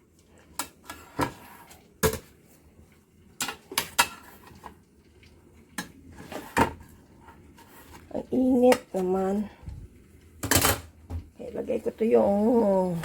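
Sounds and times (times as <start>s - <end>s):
pans and utensils clinking: 3.4s - 4.8s, 10.4s - 11.0s.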